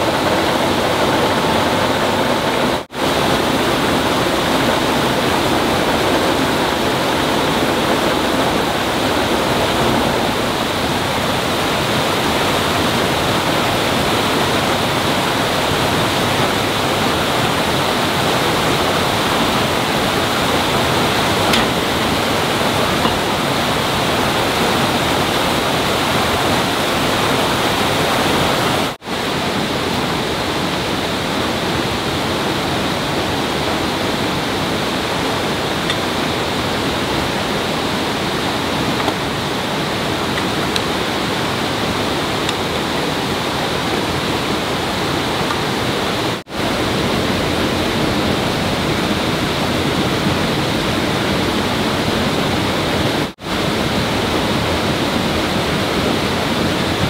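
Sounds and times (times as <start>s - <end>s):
flowing water rushing: 0.0s - 57.0s.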